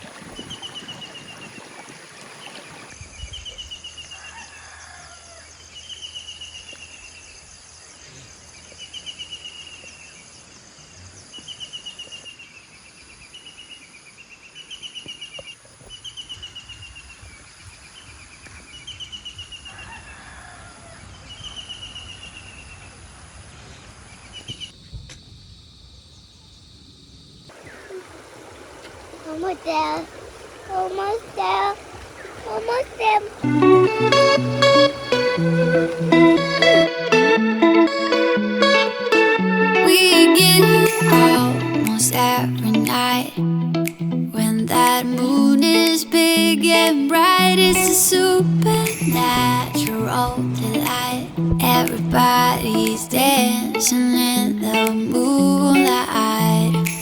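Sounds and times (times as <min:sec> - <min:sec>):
rooster crowing: 0:04.1 - 0:05.6, 0:19.7 - 0:21.1.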